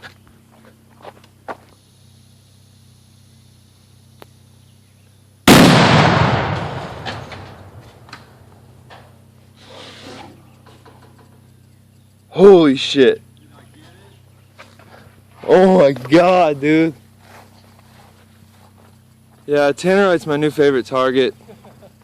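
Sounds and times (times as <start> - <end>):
loud explosion blast: 5.5 - 8.1
rifle shot: 5.5 - 8.4.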